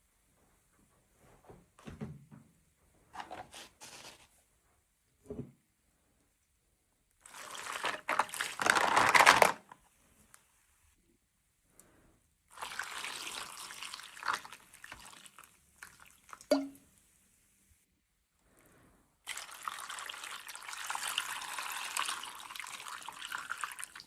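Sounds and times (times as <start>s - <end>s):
water pouring: 12.5s - 16.8s, 19.3s - 24.0s.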